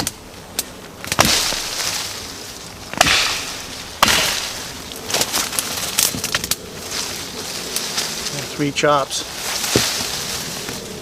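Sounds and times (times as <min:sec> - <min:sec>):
branch rustling: 0:00.0 - 0:11.0
axe chopping into branch: 0:01.0 - 0:02.0, 0:02.9 - 0:06.5.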